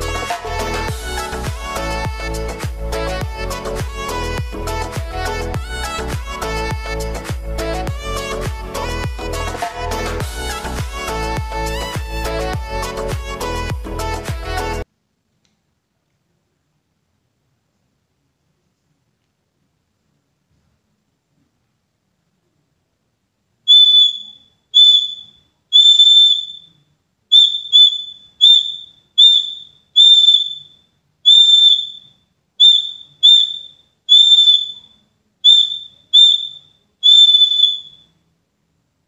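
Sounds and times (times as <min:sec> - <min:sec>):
pigeon whistle blasts: 0:23.7 - 0:38.2.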